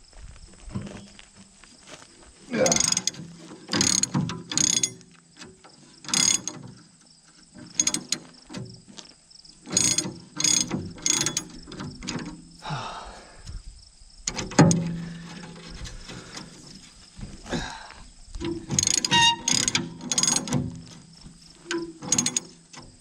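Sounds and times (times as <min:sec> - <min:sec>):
ratchet wrench clicking: 0:02.7 - 0:05.0, 0:06.1 - 0:06.6, 0:07.8 - 0:08.2, 0:09.7 - 0:11.7, 0:18.5 - 0:20.6, 0:22.0 - 0:22.5.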